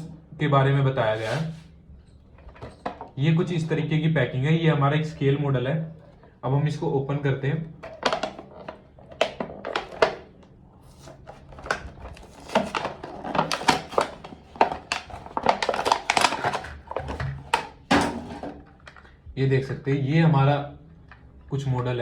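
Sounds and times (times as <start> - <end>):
packaging rustling and clicking: 7.8 - 19.2.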